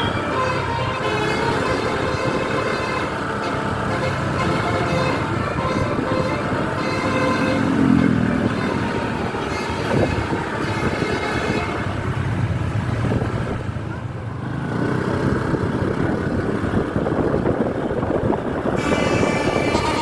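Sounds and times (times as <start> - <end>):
multi-tone musical bus horns: 0.0 - 12.4, 18.6 - 20.0
bus engines rumbling: 0.0 - 20.0.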